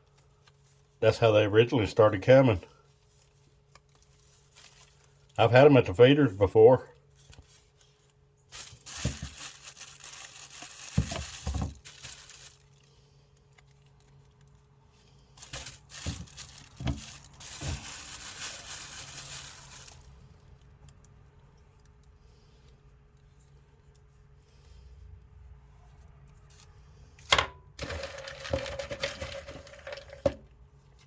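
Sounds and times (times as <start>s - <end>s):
scraping and crinkling: 1.6s - 5.6s, 7.0s - 24.6s, 27.8s - 31.0s.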